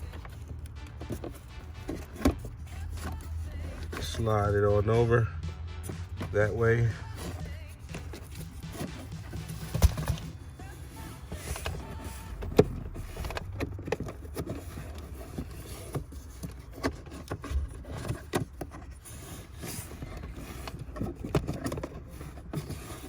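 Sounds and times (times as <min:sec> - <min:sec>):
filter scraping into plastic housing: 0:07.1 - 0:23.0.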